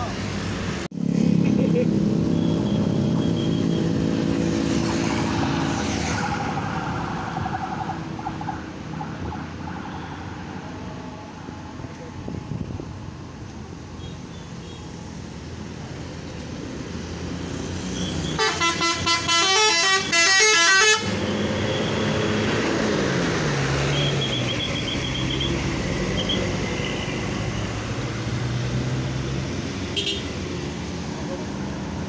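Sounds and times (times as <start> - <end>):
bus engine: 0.0 - 32.0
traffic noise: 0.0 - 32.0
musical bus horn tune: 18.3 - 21.2.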